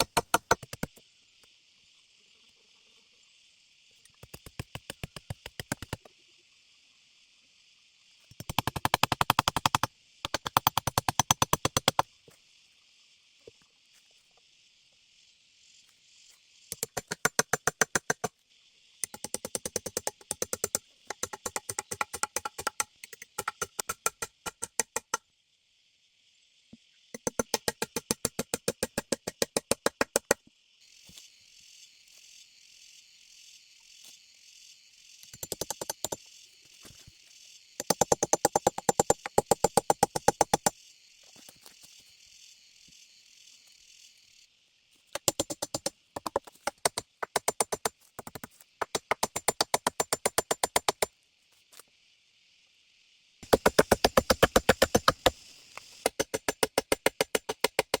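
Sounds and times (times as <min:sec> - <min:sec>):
insects buzzing: 0:00.0 - 0:58.0
rapid regular clicking: 0:53.4 - 0:58.0.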